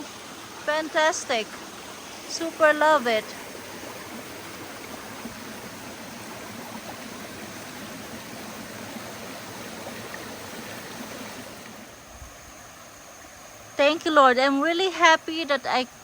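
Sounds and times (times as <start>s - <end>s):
river flowing over rocks: 0.0s - 12.0s.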